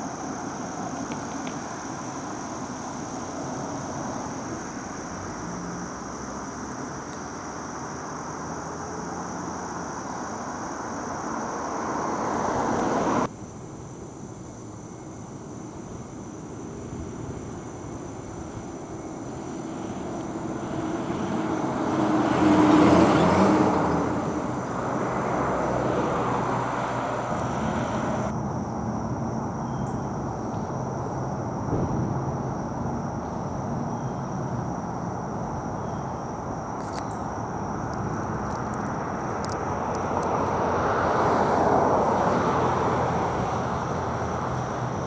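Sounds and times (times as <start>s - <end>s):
traffic noise: 0.0s - 45.0s
motor vehicle passing by: 11.5s - 13.3s, 19.2s - 28.3s, 38.4s - 45.0s.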